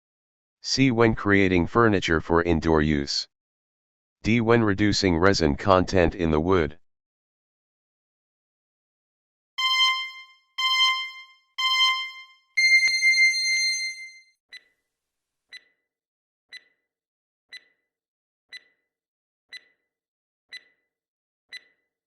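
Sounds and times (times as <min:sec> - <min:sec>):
electronic timer beeps: 0:09.6 - 0:14.7, 0:16.5 - 0:16.8, 0:17.5 - 0:17.8, 0:18.5 - 0:18.8, 0:19.5 - 0:19.8, 0:20.5 - 0:20.8, 0:21.5 - 0:21.8
faint timer ticks: 0:14.5 - 0:14.8, 0:15.5 - 0:15.8, 0:16.5 - 0:16.8, 0:17.5 - 0:17.8, 0:18.5 - 0:18.8, 0:19.5 - 0:19.8, 0:20.5 - 0:20.8, 0:21.5 - 0:21.9.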